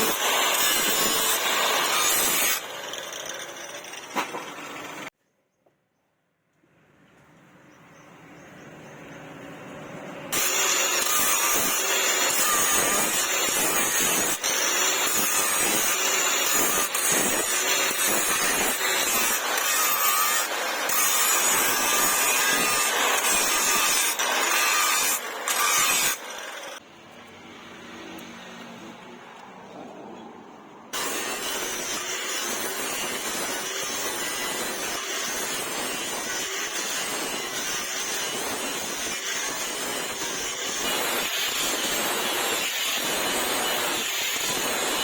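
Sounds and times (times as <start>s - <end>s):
power tool grinding metal: 0.0s - 5.1s, 10.3s - 26.8s, 31.0s - 45.0s.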